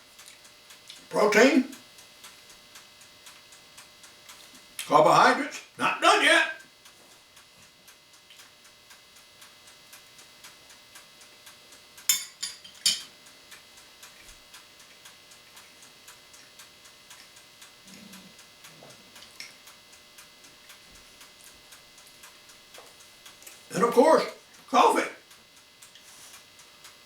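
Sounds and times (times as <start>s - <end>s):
tableware clinking: 12.1s - 13.1s.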